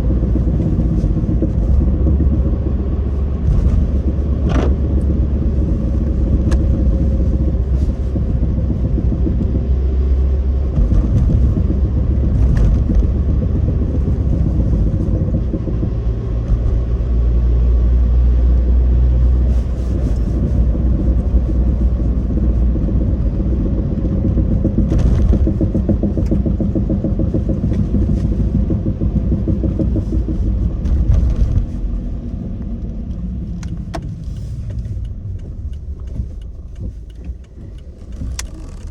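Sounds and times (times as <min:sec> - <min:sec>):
car engine and road rumble: 0:00.0 - 0:38.9.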